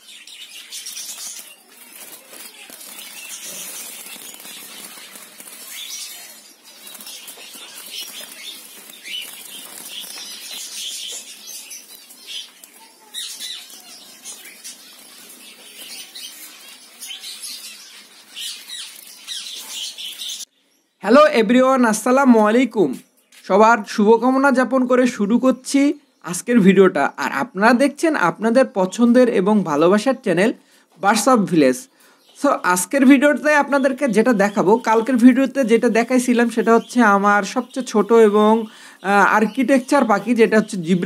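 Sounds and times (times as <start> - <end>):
birds flapping wings: 0.6 - 20.4.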